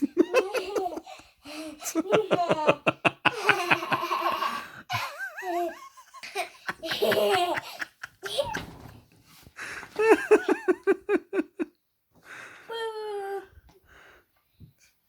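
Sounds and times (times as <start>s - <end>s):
child giggling: 0.0s - 8.9s, 10.0s - 11.4s
young child laughing: 0.0s - 8.9s.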